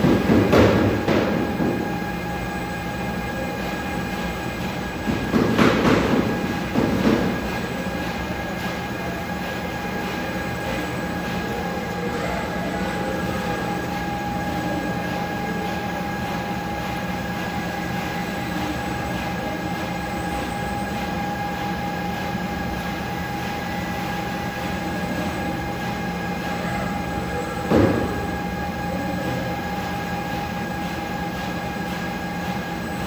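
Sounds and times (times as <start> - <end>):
machinery humming with high whine: 0.0 - 33.0.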